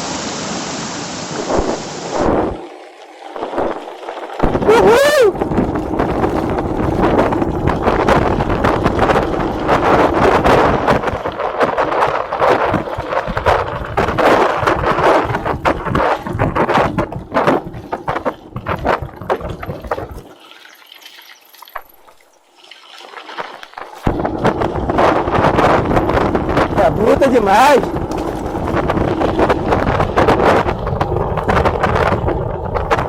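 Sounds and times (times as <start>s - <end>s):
wind buffeting microphone: 1.4s - 2.7s, 3.3s - 20.3s, 23.8s - 33.0s
bike tyres crunching on dirt: 1.5s - 20.3s, 23.3s - 33.0s
bike knocks and rattles: 5.4s - 20.2s, 23.8s - 33.0s.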